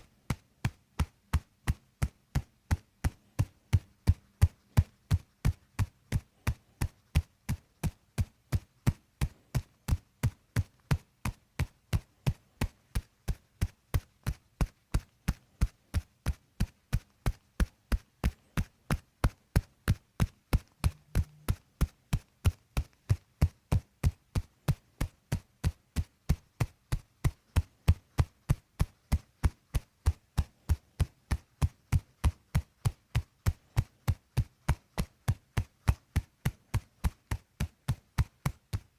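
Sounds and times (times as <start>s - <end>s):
percussive massage tapping: 0.0s - 38.9s.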